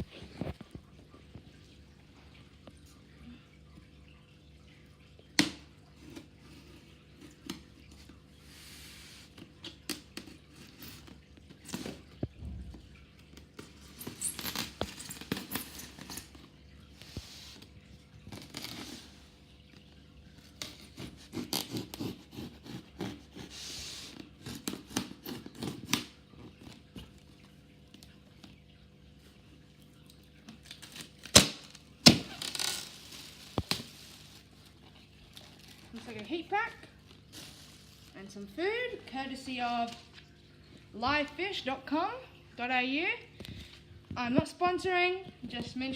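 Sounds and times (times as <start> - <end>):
packing tape tearing: 30.6 - 34.4
packaging scraping and rustling: 32.2 - 36.3, 37.0 - 38.2.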